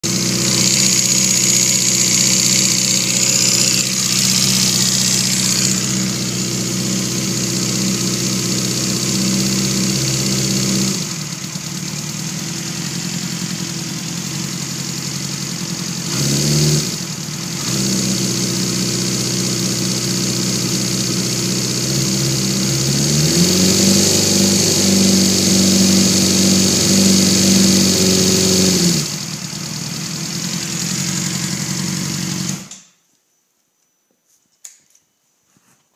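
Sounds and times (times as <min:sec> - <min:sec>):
engine clacking noise: 0:00.0 - 0:14.6
motorcycle engine revving: 0:00.0 - 0:32.8.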